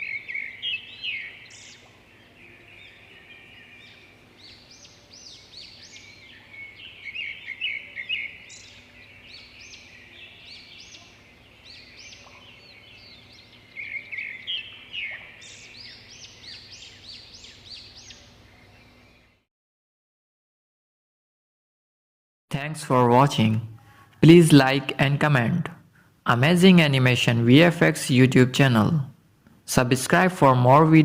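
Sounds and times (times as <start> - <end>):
small birds chirping: 0.0 - 19.4.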